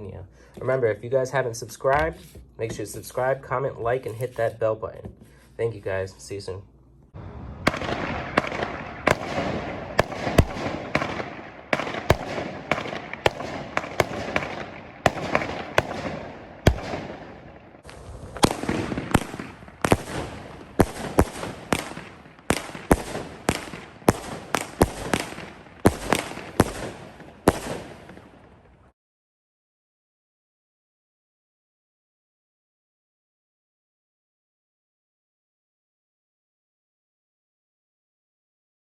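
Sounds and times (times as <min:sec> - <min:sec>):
firework crackling: 0:07.2 - 0:28.7
firework bangs: 0:07.2 - 0:28.8.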